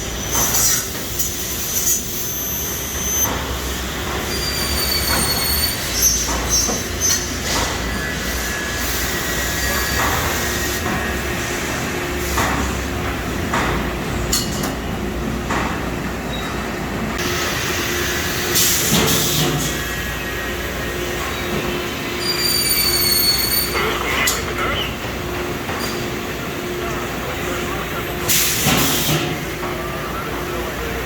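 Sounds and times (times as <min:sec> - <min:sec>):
hissing and clunking bursts: 0:17.2 - 0:19.9.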